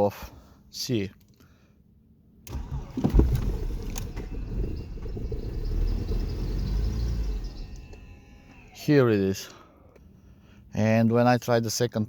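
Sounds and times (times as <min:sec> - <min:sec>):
engine running roughly: 0:02.5 - 0:08.8
starter motor cranking: 0:02.5 - 0:08.8.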